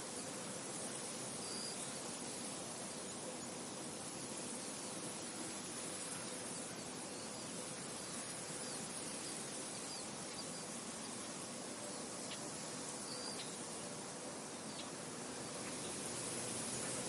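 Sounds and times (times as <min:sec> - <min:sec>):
insects: 0:00.0 - 0:17.0
wind: 0:00.0 - 0:17.0
faint high bird chirps: 0:12.0 - 0:13.7.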